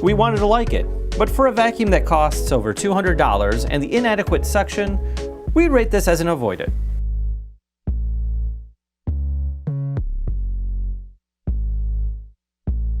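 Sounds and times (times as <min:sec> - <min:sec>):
synthesizer chords with deep bass: 0:00.0 - 0:06.0.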